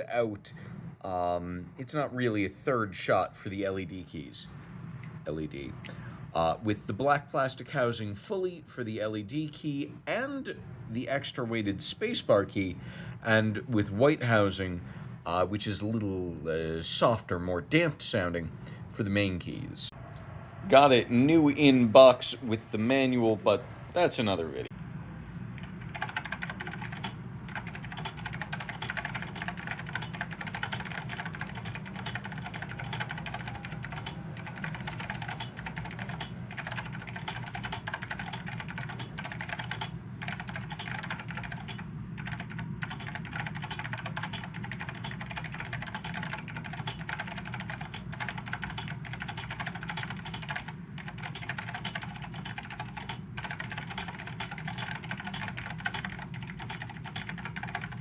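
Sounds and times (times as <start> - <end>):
keyboard typing: 25.6 - 58.0.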